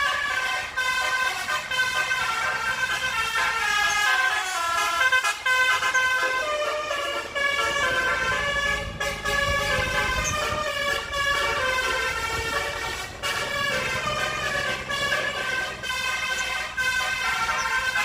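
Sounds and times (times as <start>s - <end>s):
truck air horn playing a tune: 0.0s - 18.0s
low rumble: 7.7s - 15.9s.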